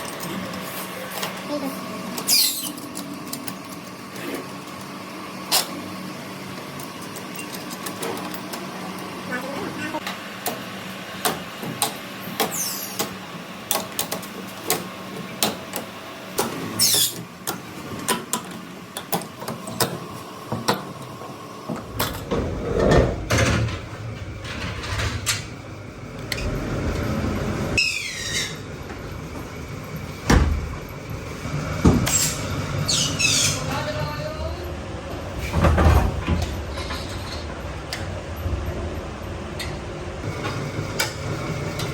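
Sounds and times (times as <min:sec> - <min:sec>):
machinery humming: 0:00.0 - 0:41.9
short falling squeals: 0:27.8 - 0:28.7.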